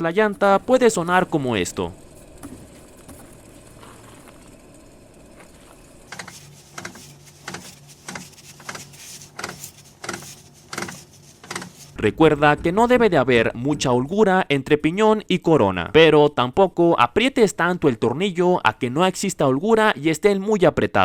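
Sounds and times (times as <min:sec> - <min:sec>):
steady rumble: 0:00.0 - 0:14.7
low hum: 0:00.0 - 0:15.0
uneven clicks and knocks: 0:06.1 - 0:12.0.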